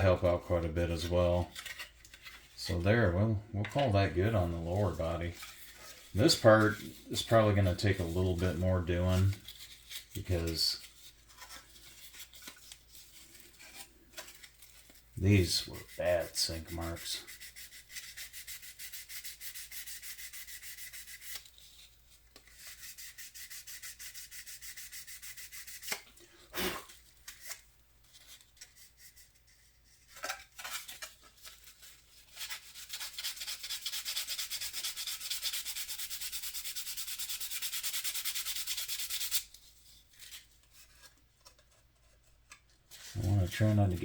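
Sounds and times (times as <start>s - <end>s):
sandpaper sanding by hand: 15.4s - 21.6s, 22.5s - 26.0s, 32.3s - 39.5s.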